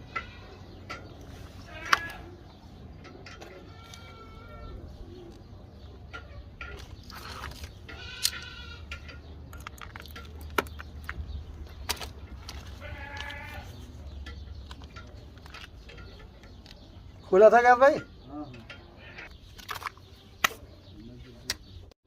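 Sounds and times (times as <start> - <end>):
goats bleating: 1.6 - 2.4, 3.6 - 4.9, 7.9 - 8.9, 12.8 - 13.8.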